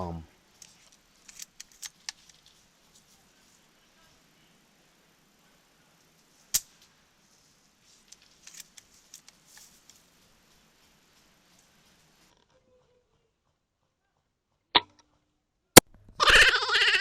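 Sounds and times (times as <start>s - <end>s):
small clicks and scuffs: 0.5s - 3.7s, 6.0s - 13.6s.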